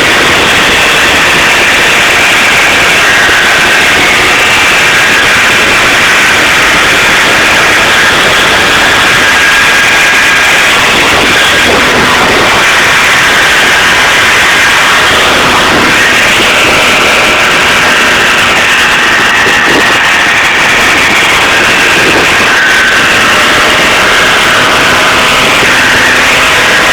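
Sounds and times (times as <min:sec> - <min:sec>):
faint steady whine: 0:00.0 - 0:26.9
moped engine running: 0:00.0 - 0:26.9.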